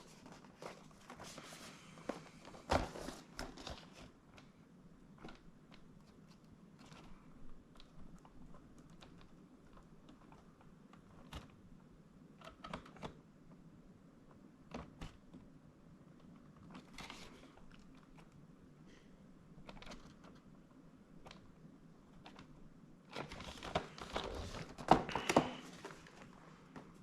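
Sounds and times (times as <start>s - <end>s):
packaging rustle: 0.0s - 4.2s, 23.1s - 27.0s.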